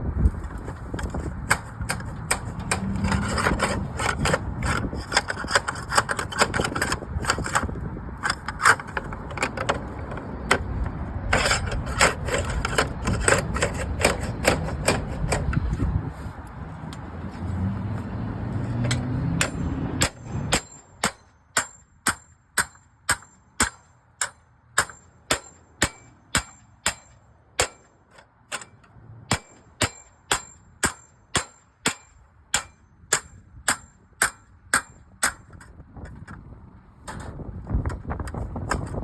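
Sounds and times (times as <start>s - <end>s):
hammering with metallic ring: 18.8s - 35.4s.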